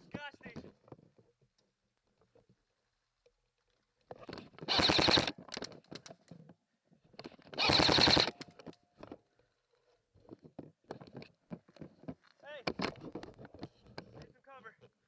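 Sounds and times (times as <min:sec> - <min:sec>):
airsoft rifle bursts: 0:04.7 - 0:05.4, 0:07.6 - 0:08.6.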